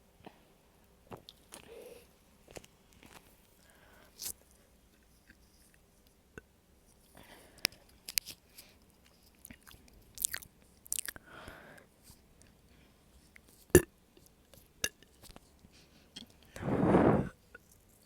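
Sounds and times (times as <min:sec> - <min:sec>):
soft breath: 0:01.6 - 0:02.2, 0:03.6 - 0:04.2, 0:11.2 - 0:12.0, 0:15.7 - 0:17.4.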